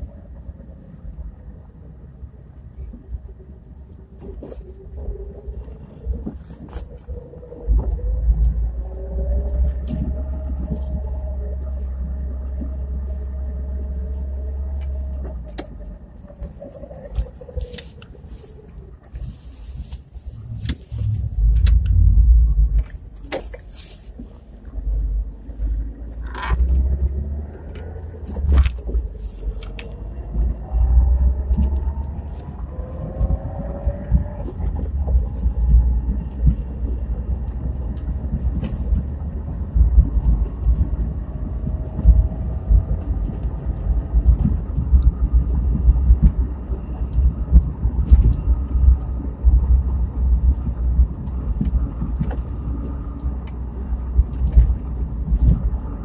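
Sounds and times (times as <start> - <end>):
low rumble: 0.0 - 56.0
muffled drivetrain hum: 0.0 - 56.0
engine note rising: 20.3 - 23.0.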